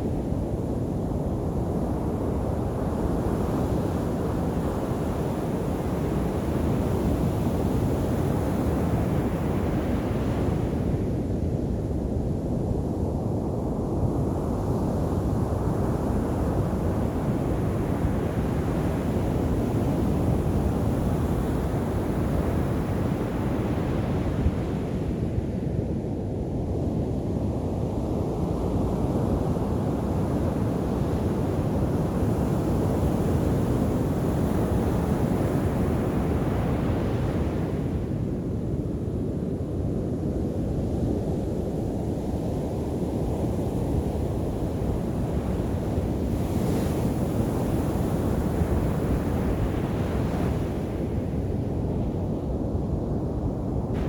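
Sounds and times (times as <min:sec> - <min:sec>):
low rumble of waves: 0:27.1 - 0:54.0.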